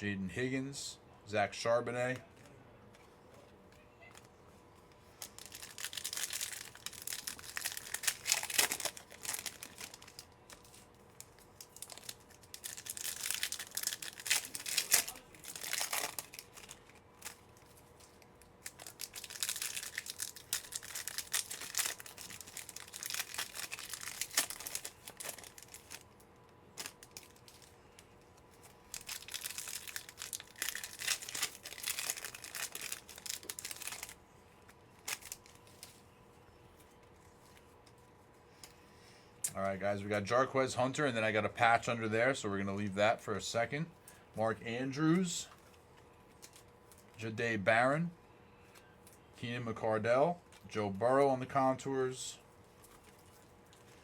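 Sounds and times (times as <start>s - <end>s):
wrappers tearing and crinkling: 5.1s - 34.2s, 35.0s - 36.0s.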